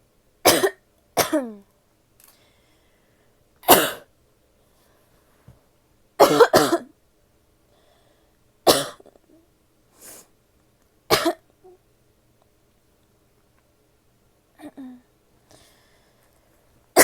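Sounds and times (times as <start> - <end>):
woman coughing: 0.5 - 1.6, 3.6 - 4.1, 6.2 - 6.9, 8.7 - 9.1, 11.1 - 11.4
faint breath: 2.2 - 3.5, 7.7 - 8.4, 15.4 - 16.8.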